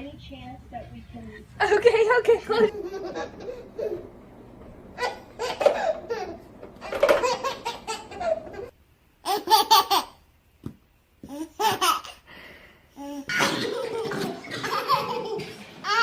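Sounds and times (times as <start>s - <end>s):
small child laughing: 2.7s - 4.1s, 5.0s - 10.2s, 13.0s - 16.0s.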